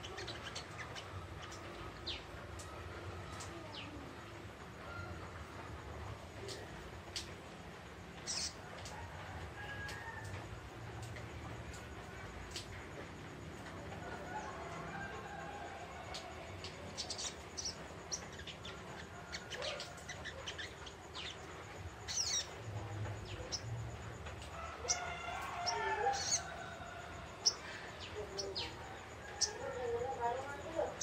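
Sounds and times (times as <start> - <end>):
bird twittering in high chirps: 0.0 - 2.2, 8.2 - 8.6, 16.9 - 22.6, 25.6 - 26.6, 27.4 - 30.0.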